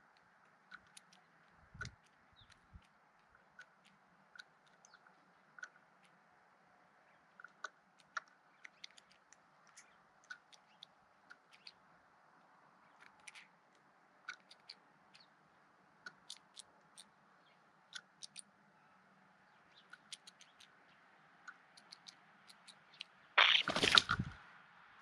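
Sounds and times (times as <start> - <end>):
jay making dry clicks: 0.1 - 6.2, 7.3 - 11.8, 12.9 - 15.3, 16.1 - 17.1, 21.5 - 24.4.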